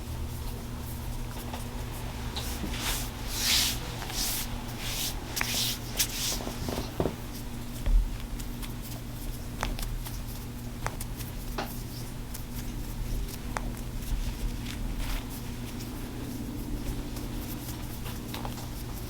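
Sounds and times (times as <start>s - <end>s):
steady low hum: 0.0s - 8.6s
hands rubbing skin: 2.3s - 7.4s.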